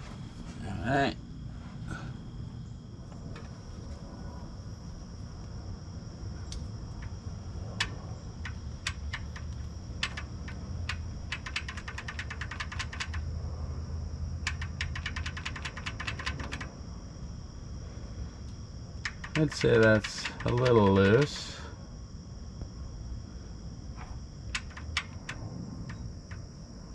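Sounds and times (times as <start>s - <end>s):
low steady hum: 0.0s - 26.9s
ratchet wrench clicking: 7.8s - 13.3s, 14.4s - 16.7s, 19.0s - 21.4s.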